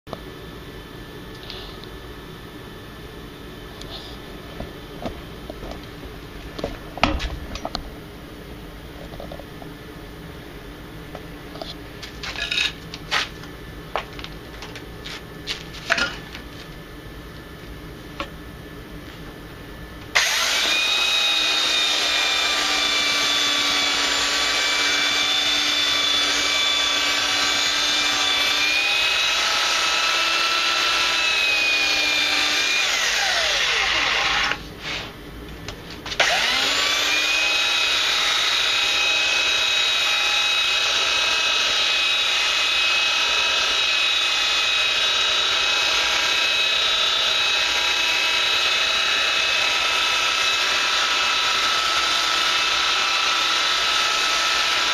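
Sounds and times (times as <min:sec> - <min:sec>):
power sander on wood: 0:20.2 - 0:34.6, 0:36.2 - 0:54.9.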